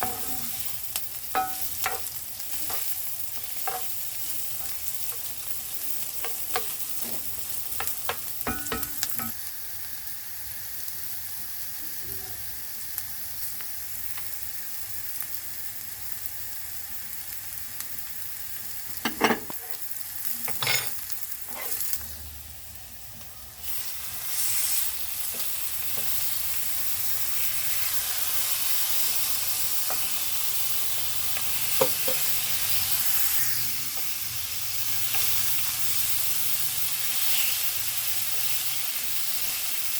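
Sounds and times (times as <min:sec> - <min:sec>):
spoon scraping a pan: 0:00.0 - 0:05.3, 0:06.2 - 0:09.4, 0:19.0 - 0:19.8, 0:20.4 - 0:22.1
food sizzling in hot oil: 0:00.0 - 0:39.9.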